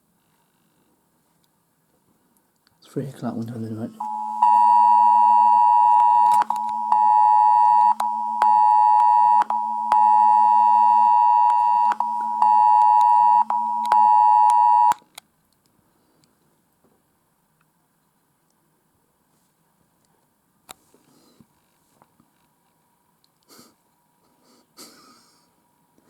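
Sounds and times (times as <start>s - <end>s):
two-tone alert signal: 4.0s - 14.9s.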